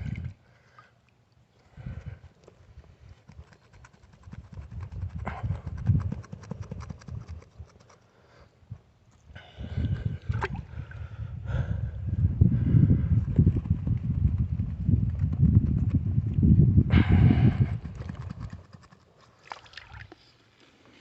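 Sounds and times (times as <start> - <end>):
water sloshing: 0.0 - 3.2, 9.9 - 11.1, 19.2 - 21.0.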